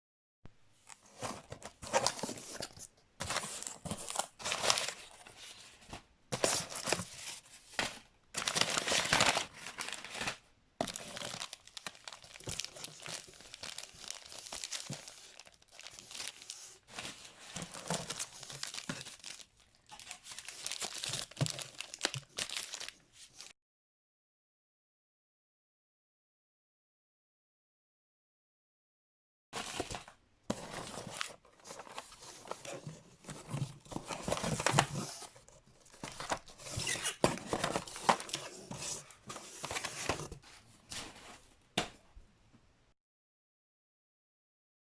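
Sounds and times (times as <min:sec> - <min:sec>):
packaging crinkling and tearing: 0:01.1 - 0:05.3, 0:06.4 - 0:23.5, 0:29.6 - 0:40.4.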